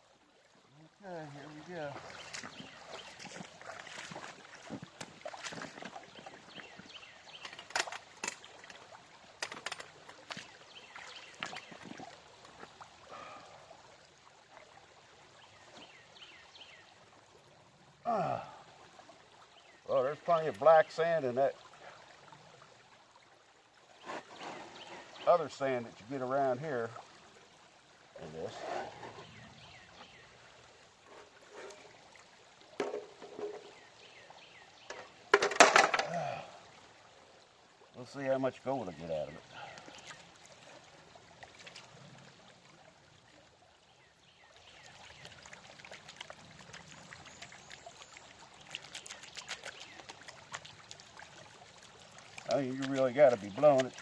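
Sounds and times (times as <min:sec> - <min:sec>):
water splashing and pouring: 0:00.7 - 0:16.0, 0:28.1 - 0:34.2, 0:34.8 - 0:37.1, 0:44.6 - 0:54.0
knocks and clatters: 0:34.9 - 0:36.1.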